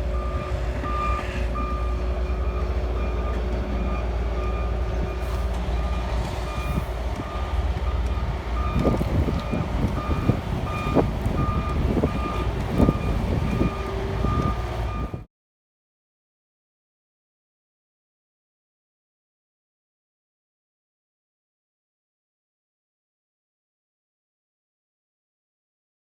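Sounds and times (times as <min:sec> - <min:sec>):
vehicle reversing alarm beeping: 0:00.0 - 0:15.3.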